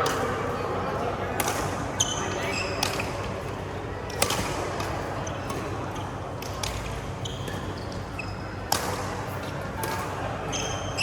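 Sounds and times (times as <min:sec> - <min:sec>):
racket hitting shuttlecock: 0:00.0 - 0:00.5, 0:01.4 - 0:01.8, 0:04.1 - 0:07.7, 0:08.6 - 0:10.7
shoes squeaking on court floor: 0:06.7 - 0:08.6, 0:09.4 - 0:11.0.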